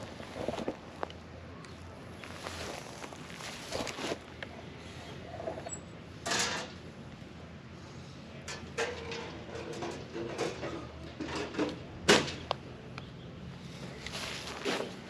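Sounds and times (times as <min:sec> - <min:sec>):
wood boards sliding and scraping: 0:14.1 - 0:15.0.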